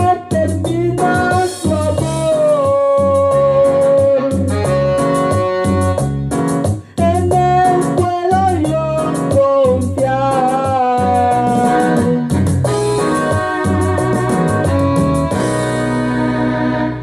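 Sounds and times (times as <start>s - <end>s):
steady drum beat: 0.0s - 16.1s
band music: 0.0s - 17.0s
stepping bass line: 0.0s - 17.0s
melody holding long note: 12.7s - 17.0s.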